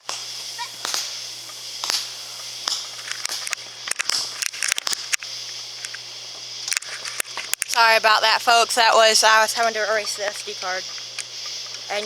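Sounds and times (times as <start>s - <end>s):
low hum and hiss: 0.0s - 12.0s
microphone handling clicks and rustles: 2.6s - 6.0s, 6.6s - 7.8s.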